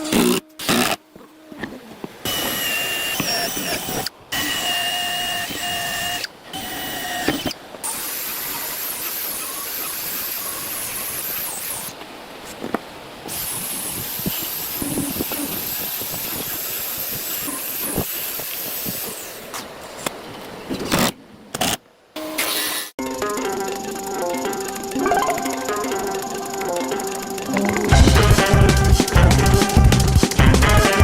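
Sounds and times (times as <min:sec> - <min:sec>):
power tool whining: 0:02.2 - 0:11.9.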